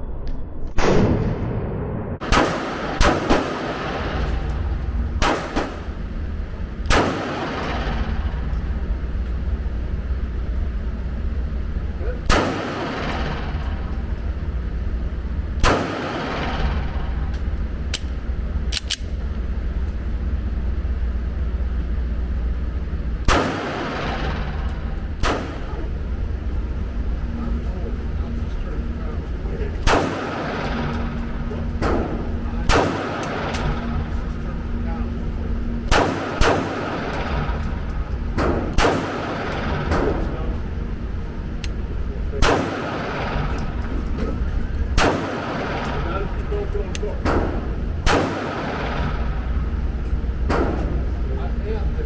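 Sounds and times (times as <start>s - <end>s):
steady low rumble: 0.0s - 52.0s
pistol shots with echo: 0.8s - 6.1s, 6.8s - 8.8s, 12.2s - 14.2s, 15.6s - 18.2s, 23.2s - 26.1s, 29.8s - 34.4s, 35.8s - 49.8s, 50.4s - 51.3s.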